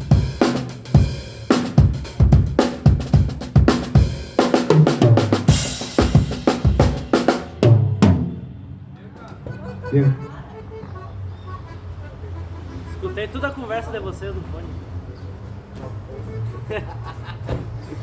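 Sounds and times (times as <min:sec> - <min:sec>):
drum kit groove: 0:00.0 - 0:08.5
low tom hits: 0:00.0 - 0:08.7.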